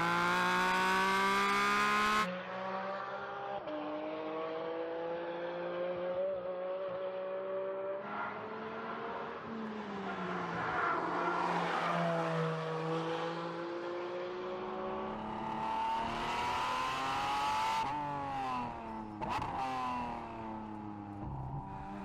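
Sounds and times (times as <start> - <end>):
race car engine accelerating: 11.3 - 22.0.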